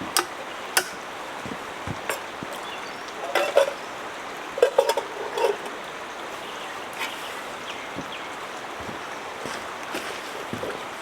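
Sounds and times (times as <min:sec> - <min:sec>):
rain or running water hiss: 0:00.0 - 0:11.0
clinks of hard items: 0:03.2 - 0:03.8, 0:04.6 - 0:05.8.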